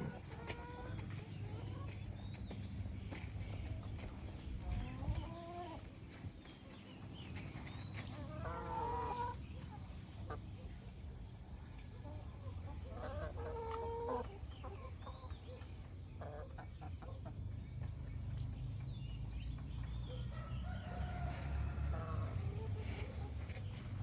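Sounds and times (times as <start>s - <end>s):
steady low rumble: 0.0s - 8.0s
chickens calling: 0.0s - 24.0s.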